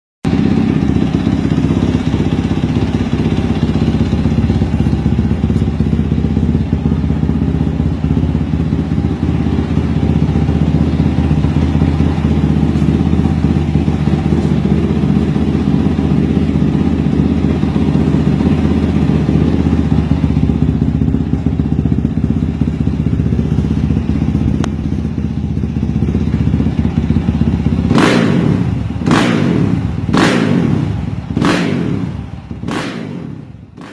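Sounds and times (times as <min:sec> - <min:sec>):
motorcycle engine running: 0:00.2 - 0:33.9
sharp bangs: 0:27.9 - 0:33.9.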